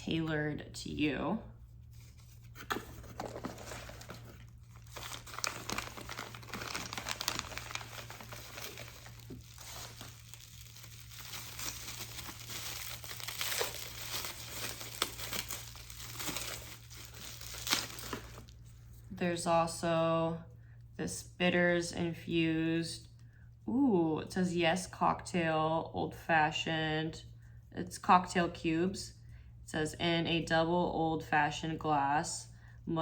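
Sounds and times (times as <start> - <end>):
packaging crinkling and rustling: 1.9 - 18.8
packaging tearing: 2.6 - 18.6.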